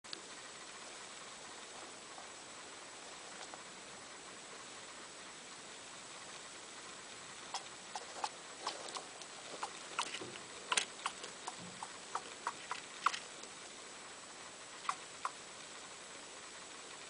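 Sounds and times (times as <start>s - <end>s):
small pet clicking squeaks: 7.5s - 13.6s, 14.8s - 15.4s.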